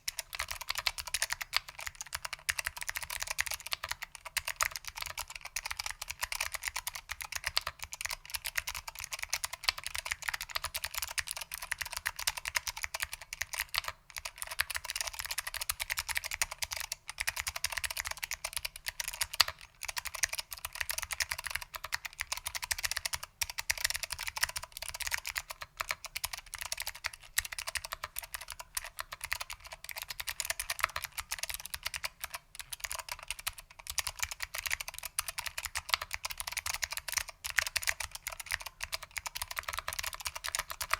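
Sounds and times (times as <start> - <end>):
mechanical keyboard typing: 0.0 - 40.9.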